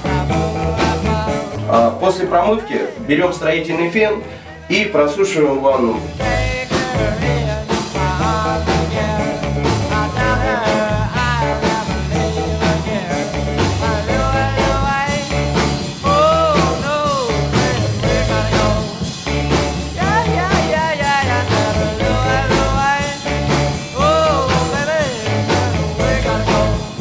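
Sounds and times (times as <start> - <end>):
song with bass and steady beat: 0.0 - 27.0.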